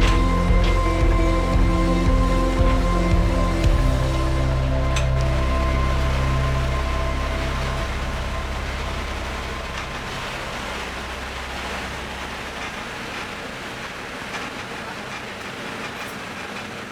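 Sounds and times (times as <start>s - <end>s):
low held music tones: 0.0s - 16.6s
vehicle running: 0.0s - 16.9s.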